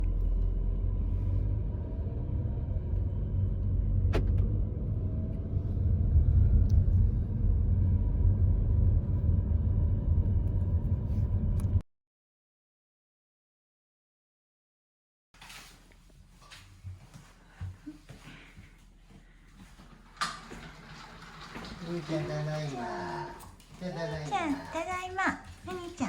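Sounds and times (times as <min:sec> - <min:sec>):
road and engine rumble: 0:00.0 - 0:11.8.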